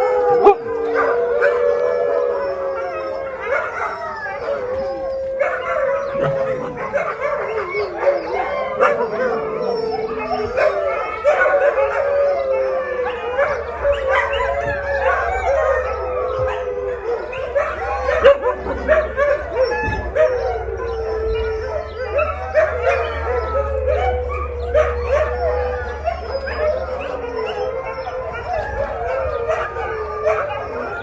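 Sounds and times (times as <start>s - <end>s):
dogs yipping and barking: 0.0s - 31.0s
huskies howling together: 0.0s - 31.0s.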